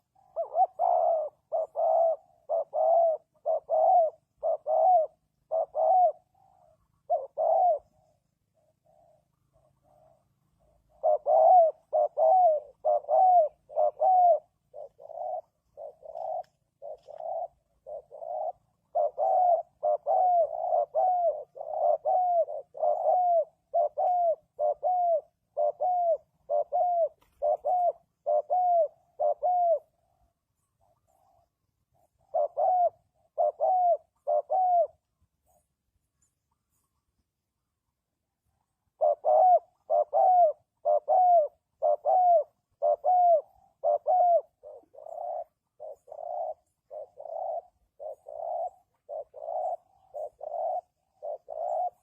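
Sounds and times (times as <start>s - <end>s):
dove cooing: 0.0s - 52.0s.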